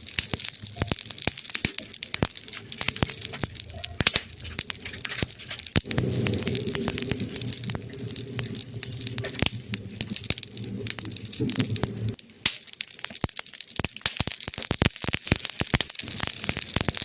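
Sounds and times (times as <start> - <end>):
wood fire crackling and popping: 0.0 - 17.0
low rumble: 2.1 - 12.2.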